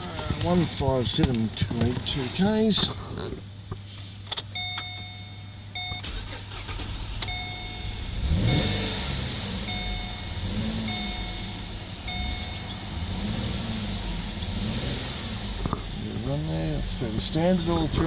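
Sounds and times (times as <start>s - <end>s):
car engine starting and idling: 0.0s - 18.0s
car warning chime: 4.5s - 14.0s.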